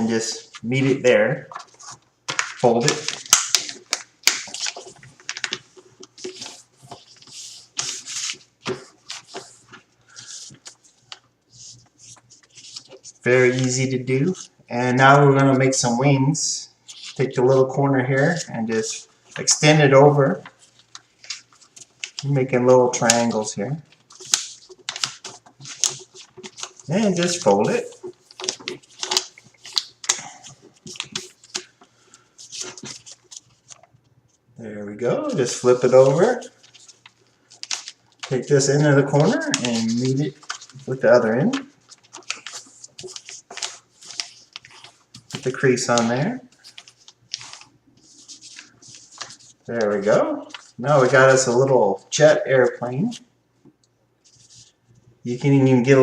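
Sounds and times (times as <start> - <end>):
paper crackling and rustling: 0.2 - 14.6, 16.8 - 34.4, 35.2 - 53.3, 54.2 - 54.8
paper swishes: 35.3 - 51.7.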